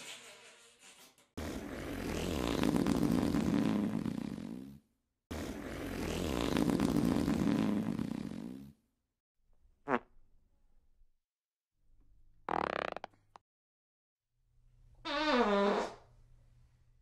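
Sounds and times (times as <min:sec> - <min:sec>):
long fart: 0:01.4 - 0:08.8, 0:09.8 - 0:10.2, 0:12.4 - 0:13.4, 0:15.0 - 0:16.1.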